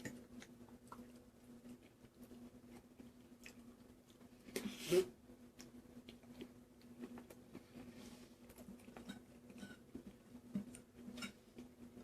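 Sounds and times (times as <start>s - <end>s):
person chewing: 0.0s - 4.8s, 5.5s - 12.0s
faint steady hum: 0.0s - 12.0s.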